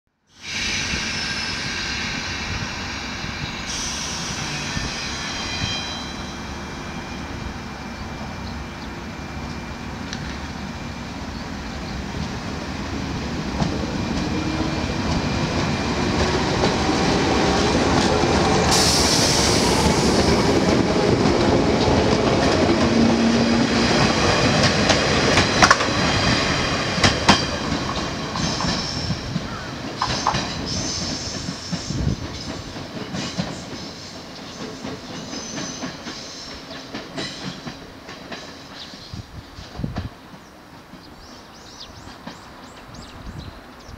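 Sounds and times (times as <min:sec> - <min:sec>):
burst of hiss: 0:00.3 - 0:05.5, 0:18.7 - 0:20.0
electric train pulling away: 0:00.3 - 0:37.9.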